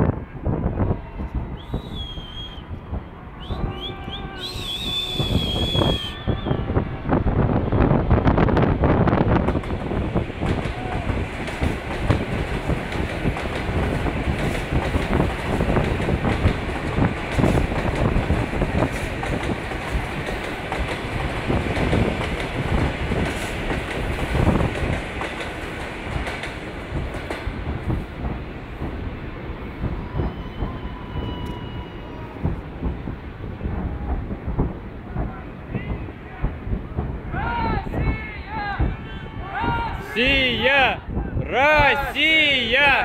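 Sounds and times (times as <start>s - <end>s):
fireworks rumble of bangs: 26.2s - 42.1s.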